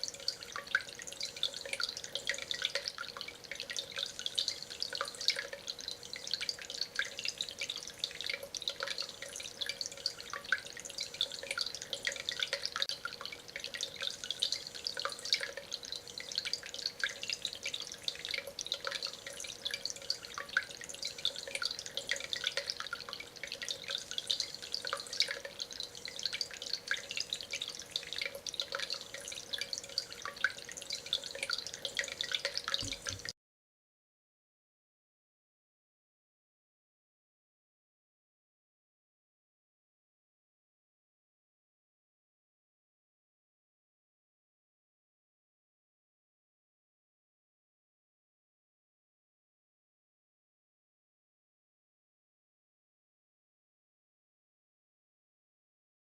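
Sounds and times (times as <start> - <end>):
faint steady hum: 0.0 - 33.3
water trickling and dripping: 0.0 - 33.4.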